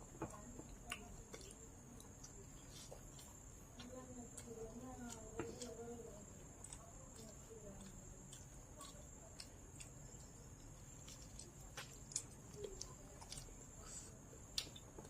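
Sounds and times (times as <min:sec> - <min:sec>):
chewing clicks and smacks: 0:00.3 - 0:13.7, 0:14.4 - 0:15.0.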